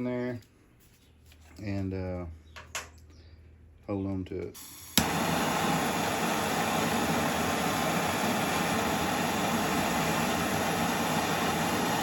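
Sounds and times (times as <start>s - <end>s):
gas torch hissing: 4.6s - 12.0s.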